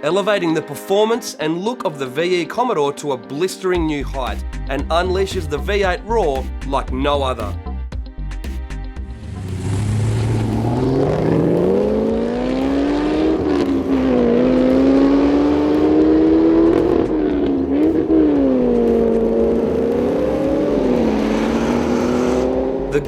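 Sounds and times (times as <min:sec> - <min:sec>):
car engine revving: 0:09.0 - 0:23.0.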